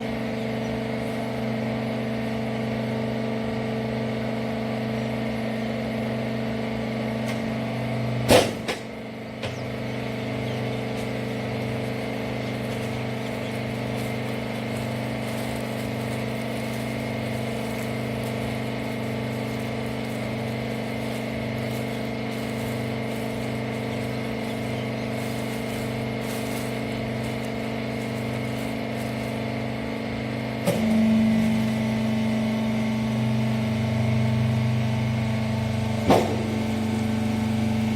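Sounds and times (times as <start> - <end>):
baler machine humming: 0.0 - 37.9
sharp clunk: 8.3 - 9.6, 36.0 - 36.5.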